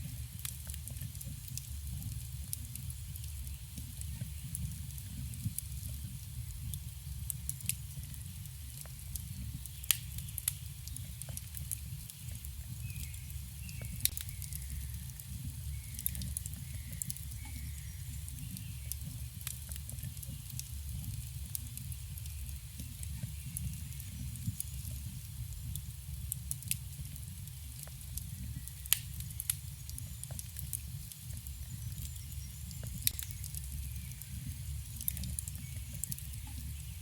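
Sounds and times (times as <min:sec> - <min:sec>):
campfire crackling and popping: 0:00.0 - 0:37.0
faint bird chirps: 0:15.6 - 0:18.9.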